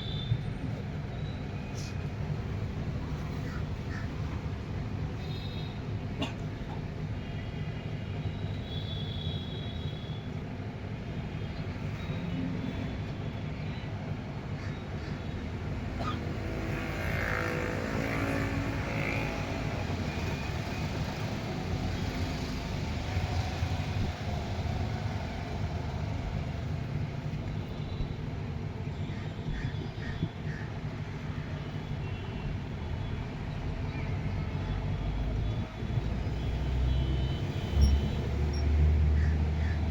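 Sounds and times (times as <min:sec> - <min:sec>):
street traffic rumble: 0:00.0 - 0:39.9
vehicle passing: 0:16.1 - 0:26.6.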